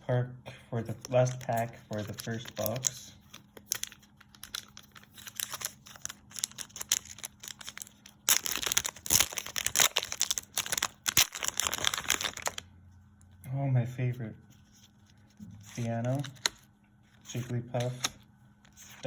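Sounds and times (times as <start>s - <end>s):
foil wrapper crinkling: 0.9s - 12.7s, 14.7s - 16.7s
foil wrapper tearing: 1.1s - 12.6s.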